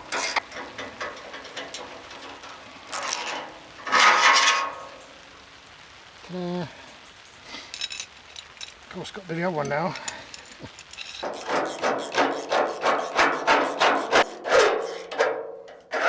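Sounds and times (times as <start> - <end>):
socket ratchet clicking: 10.9 - 15.1.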